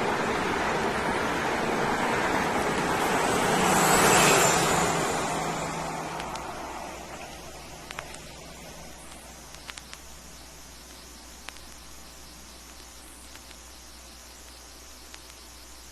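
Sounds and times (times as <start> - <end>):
vehicle passing by: 0.0 - 7.6.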